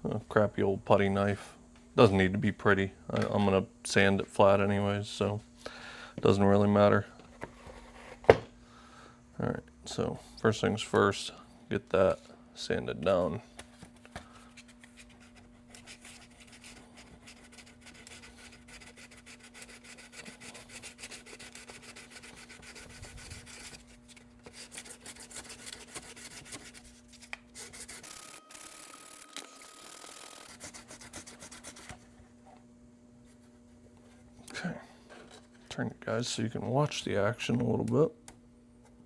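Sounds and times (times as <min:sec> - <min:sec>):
sandpaper rubbing on plastic: 0:15.0 - 0:28.0, 0:30.5 - 0:32.0.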